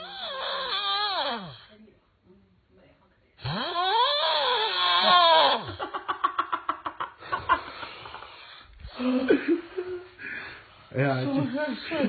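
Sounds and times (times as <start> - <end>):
person laughing: 8.9 - 10.4.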